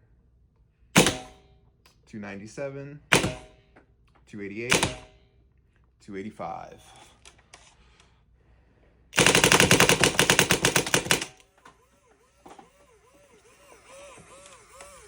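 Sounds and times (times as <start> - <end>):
paintball marker firing rapidly: 3.1 - 3.6, 4.7 - 5.1, 9.2 - 11.5.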